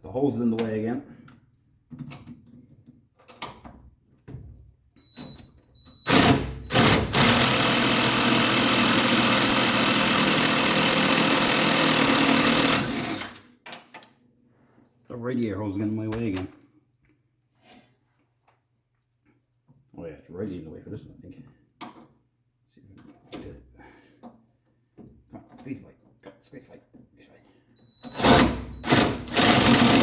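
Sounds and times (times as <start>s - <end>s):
impact wrench hammering: 6.1s - 13.3s, 28.2s - 30.0s.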